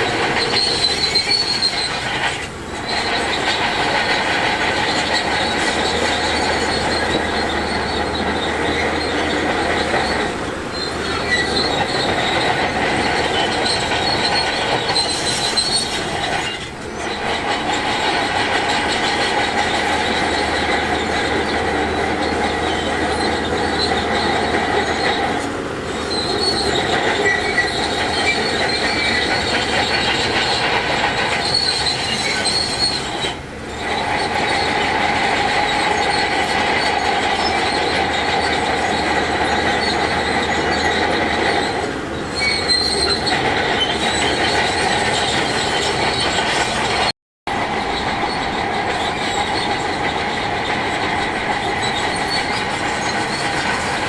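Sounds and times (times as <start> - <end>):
high metallic screech: 0.0 - 47.1, 47.7 - 54.0
steel tracks squealing: 0.0 - 54.0.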